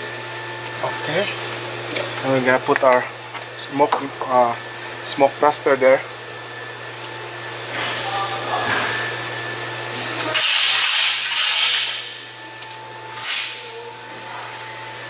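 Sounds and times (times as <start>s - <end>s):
compressed air hissing: 13.1s - 13.8s.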